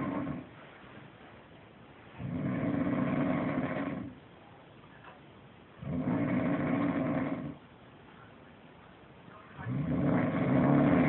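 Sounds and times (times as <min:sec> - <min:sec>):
animal snoring: 0:00.0 - 0:00.5, 0:02.2 - 0:04.2, 0:05.8 - 0:07.6, 0:09.6 - 0:11.0.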